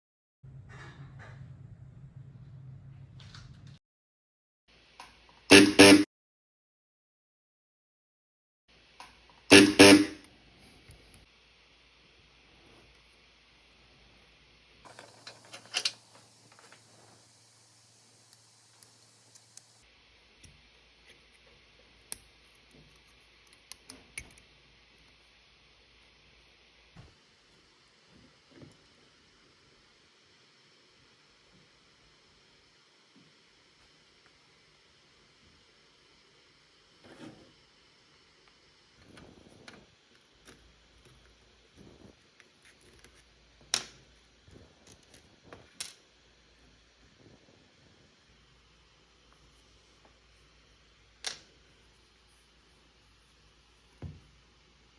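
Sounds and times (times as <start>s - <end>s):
spot welder clicks and snaps: 23.4s - 24.5s.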